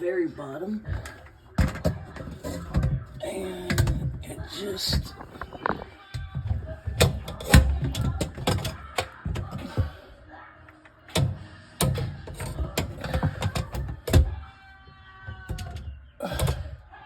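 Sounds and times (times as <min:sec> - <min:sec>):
plastic parts knocking and clicking: 0:00.9 - 0:04.2, 0:04.9 - 0:10.0, 0:11.1 - 0:14.4, 0:15.3 - 0:16.8.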